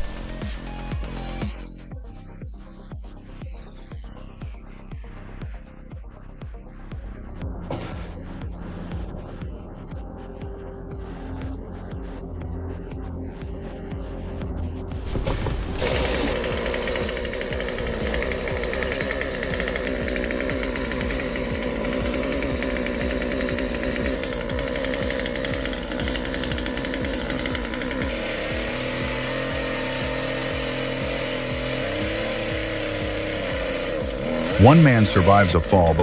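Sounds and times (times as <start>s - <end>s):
chainsaw cutting: 0.0s - 1.9s, 15.1s - 36.0s.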